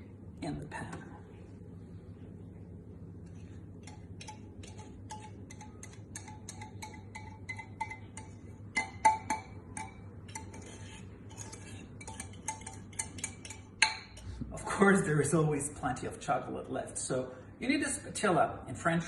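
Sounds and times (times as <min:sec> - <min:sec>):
utensil clinking on mixing bowl: 0:03.8 - 0:14.4.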